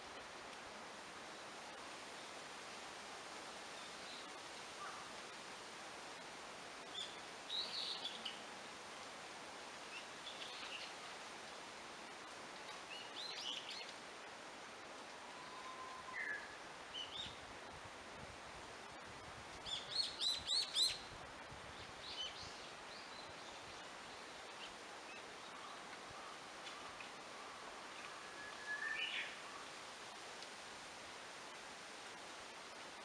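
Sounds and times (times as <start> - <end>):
faint hiss: 0.0 - 33.0
small birds chirping: 9.9 - 11.0.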